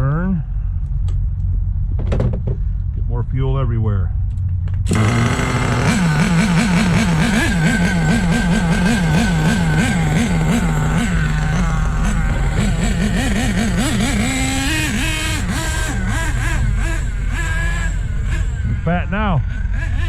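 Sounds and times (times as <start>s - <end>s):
model truck engine revving: 4.9s - 20.0s.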